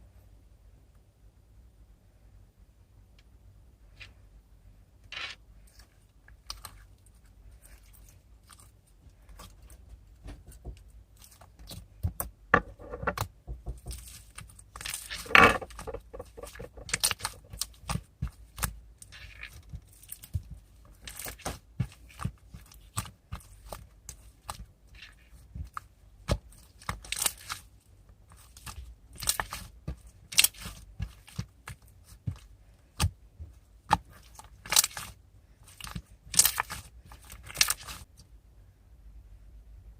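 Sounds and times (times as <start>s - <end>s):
crinkling: 5.0s - 38.2s
small objects clicking and clattering: 12.5s - 17.7s.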